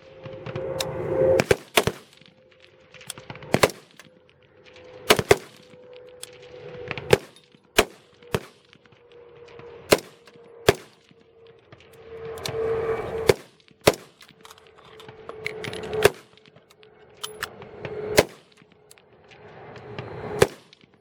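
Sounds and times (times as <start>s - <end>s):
rifle shots: 1.4s - 4.2s, 5.0s - 9.0s, 9.6s - 11.2s, 12.5s - 15.2s, 15.8s - 19.0s, 20.4s - 21.0s.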